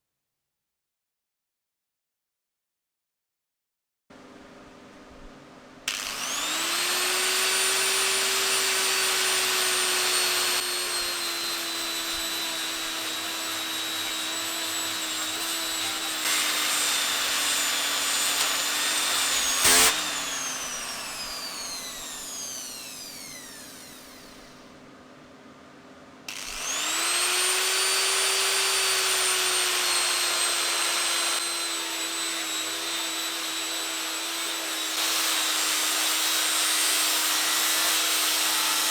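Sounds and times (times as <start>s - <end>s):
angle grinder whining: 5.9s - 24.8s, 26.3s - 38.9s.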